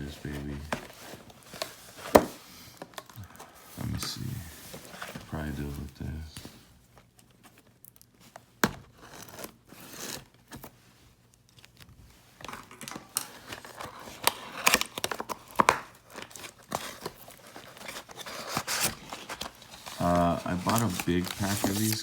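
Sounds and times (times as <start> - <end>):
plastic wrapping tearing and crinkling: 7.0 - 22.0.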